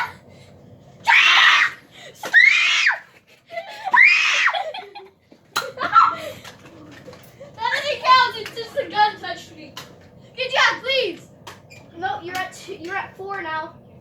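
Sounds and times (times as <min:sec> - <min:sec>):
broken cries: 0:01.0 - 0:05.1
child screaming: 0:01.1 - 0:03.0, 0:03.9 - 0:04.6.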